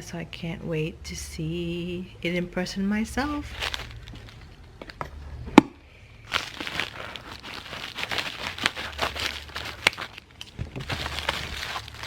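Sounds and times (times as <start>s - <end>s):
packaging crinkling: 3.4s - 5.4s, 6.2s - 12.0s.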